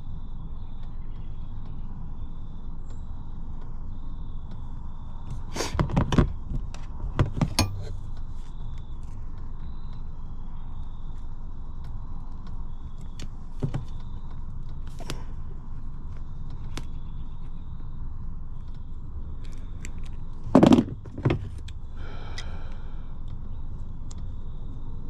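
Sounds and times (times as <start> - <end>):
hand tools clicking and rattling: 7.4 - 8.0
loud knocks: 20.6 - 21.6.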